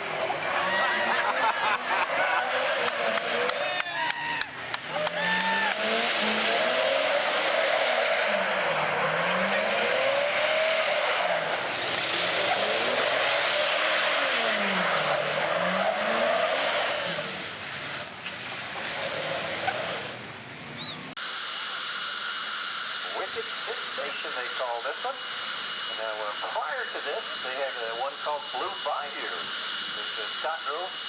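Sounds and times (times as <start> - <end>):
drag racing car engines: 0.0 - 31.0
tire and exhaust noise: 0.0 - 31.0
jet turbine whine: 21.2 - 31.0.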